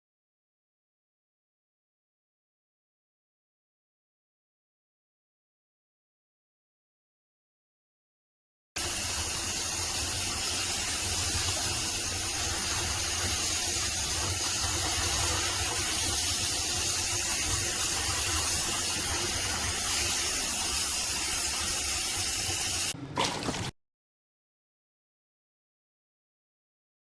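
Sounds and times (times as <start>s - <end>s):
water spraying from shower hose: 8.8s - 23.7s.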